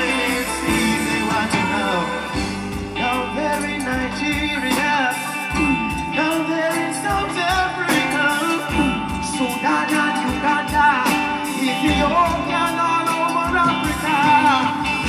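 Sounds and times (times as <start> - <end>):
drums: 0.0 - 15.0
live reggae band playing: 0.0 - 15.0
person singing: 0.0 - 15.0.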